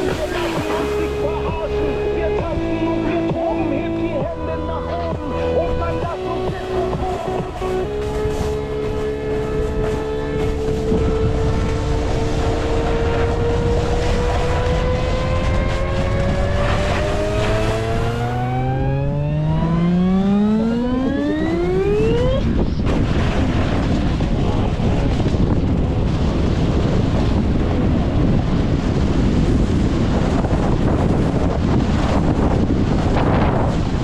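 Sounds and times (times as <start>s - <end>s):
tone rising in pitch: 0.0s - 22.6s
rush of wind and snow: 0.0s - 34.0s.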